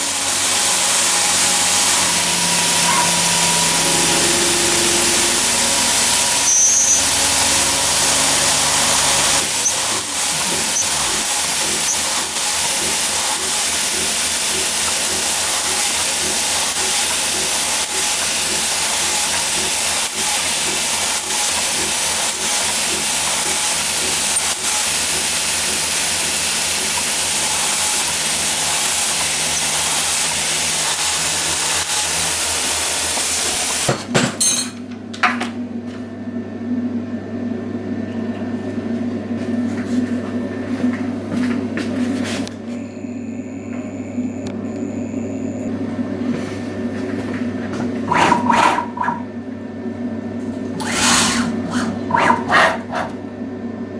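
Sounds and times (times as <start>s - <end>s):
loud machine hiss: 0.0s - 34.0s, 50.8s - 51.7s.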